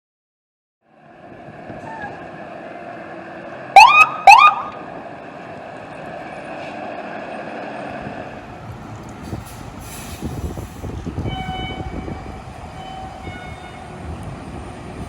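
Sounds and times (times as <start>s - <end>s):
fire engine drone: 0.9s - 15.0s
loud siren blasts: 3.8s - 4.9s, 11.2s - 14.2s.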